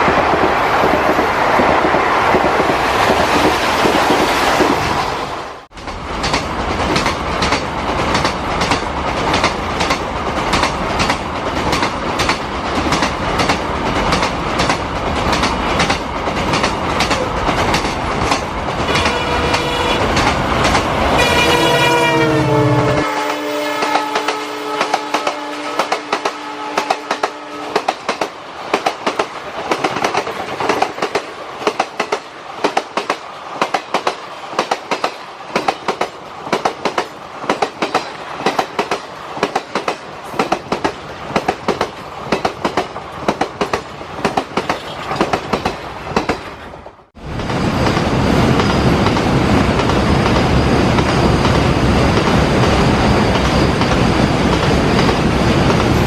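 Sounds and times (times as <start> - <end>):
rushing rumble of passing train: 0.0 - 56.0
locomotive horn: 18.8 - 20.2, 20.9 - 27.8.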